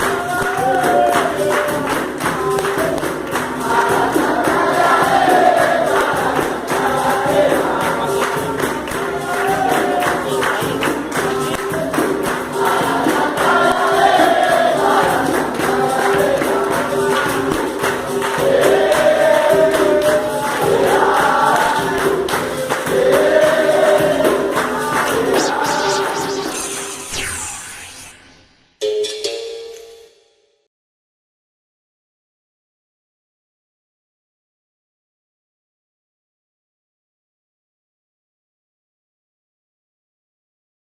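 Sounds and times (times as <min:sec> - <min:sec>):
group singing call-and-response: 0:00.0 - 0:27.8
pandeiro rhythm: 0:00.0 - 0:29.9.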